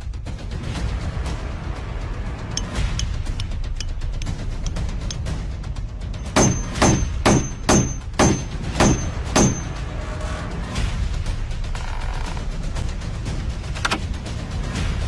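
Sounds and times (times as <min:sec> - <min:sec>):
background music: 0:00.0 - 0:15.0
loud sharp knocks: 0:06.3 - 0:09.8.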